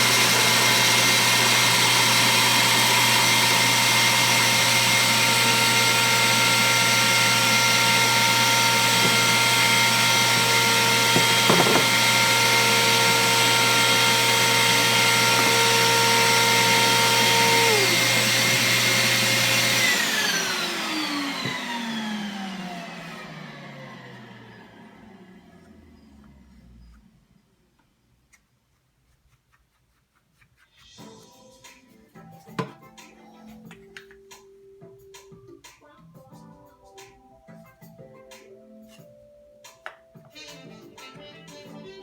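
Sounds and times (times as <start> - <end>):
router motor whining: 0.0 - 27.1.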